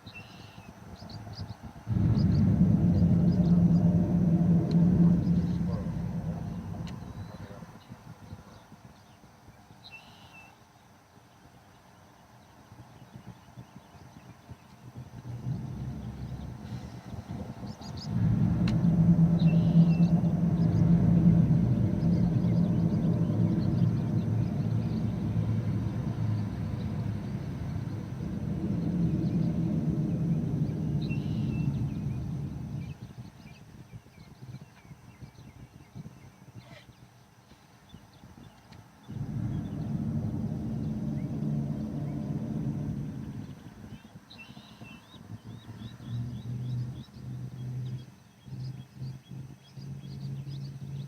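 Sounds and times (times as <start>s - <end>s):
small birds chirping: 0.0s - 10.9s, 11.7s - 51.0s
motor engine rumbling: 1.9s - 8.4s, 14.8s - 33.7s, 39.0s - 51.0s
pulsing low hum: 1.9s - 8.6s, 14.8s - 36.8s, 38.5s - 51.0s.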